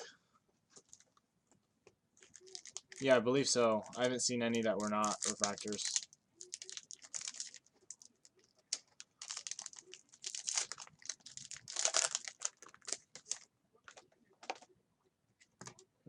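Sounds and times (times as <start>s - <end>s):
plastic wrappers crinkling and tearing: 0.8s - 1.2s, 2.2s - 14.6s.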